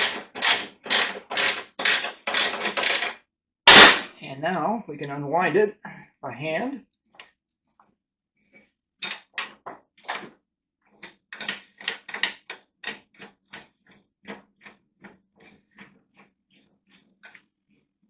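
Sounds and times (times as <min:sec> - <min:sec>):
scissor jack clicking: 0:00.0 - 0:03.1.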